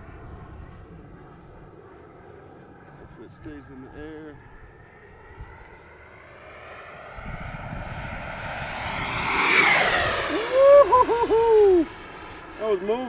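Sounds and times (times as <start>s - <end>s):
jet whooshing past: 4.0s - 13.0s
high fan whine: 5.3s - 13.0s.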